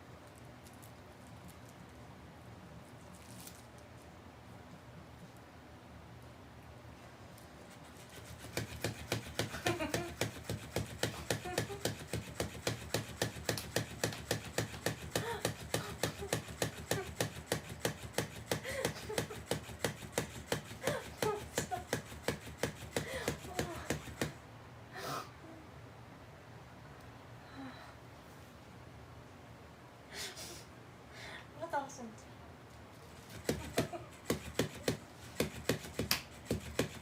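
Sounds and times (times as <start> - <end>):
toy fish motor clicking: 8.0 - 24.4, 33.3 - 37.0.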